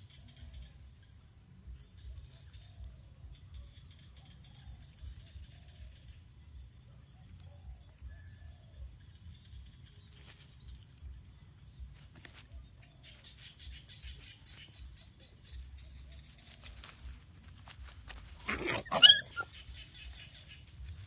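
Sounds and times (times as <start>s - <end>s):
puppy whimpering: 18.4s - 19.8s.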